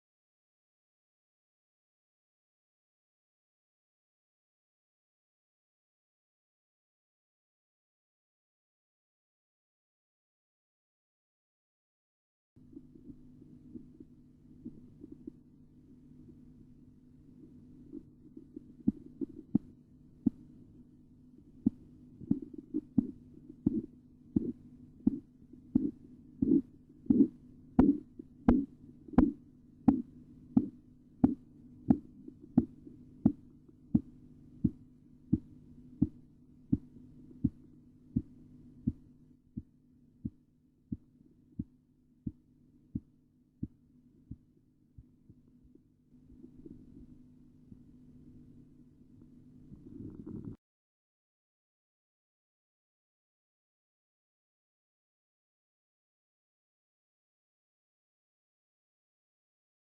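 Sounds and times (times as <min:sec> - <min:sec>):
steady low hum: 0:12.6 - 0:50.6
heartbeat taps through stethoscope: 0:17.9 - 0:20.4, 0:21.6 - 0:37.6.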